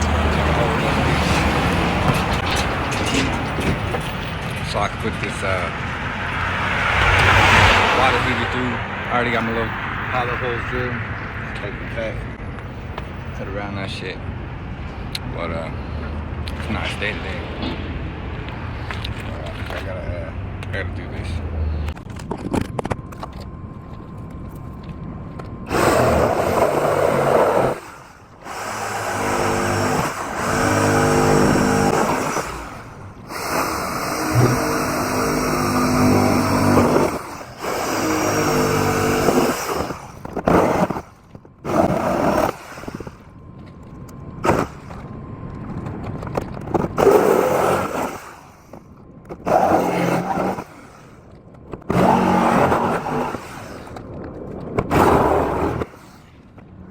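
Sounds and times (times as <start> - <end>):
power saw cutting sheet metal: 0.0 - 3.9, 4.7 - 11.0, 25.7 - 43.2, 44.4 - 45.0, 46.8 - 51.2, 51.9 - 54.0, 54.9 - 56.2.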